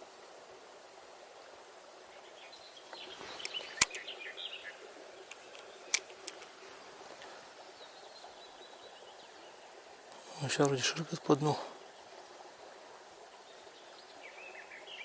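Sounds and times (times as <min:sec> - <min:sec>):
river water rushing: 0:01.6 - 0:15.0
bird chirps: 0:02.5 - 0:04.8
sharp clicks: 0:03.4 - 0:04.1, 0:05.3 - 0:06.5.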